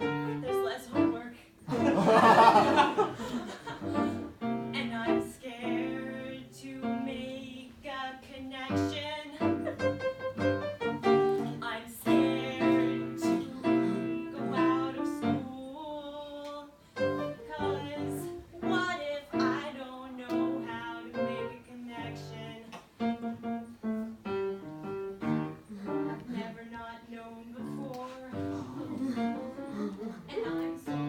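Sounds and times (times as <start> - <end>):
live piano music: 0.0 - 3.0, 3.8 - 7.4, 8.7 - 15.6, 16.9 - 19.7, 20.3 - 26.6, 27.5 - 31.0
person singing: 11.4 - 19.5.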